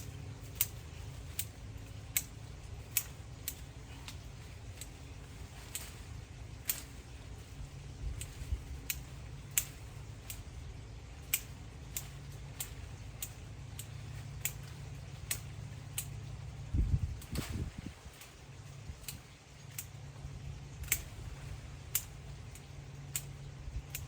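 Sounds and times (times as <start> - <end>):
low rumble: 0.0 - 24.0
pruning shears snipping: 0.0 - 24.0.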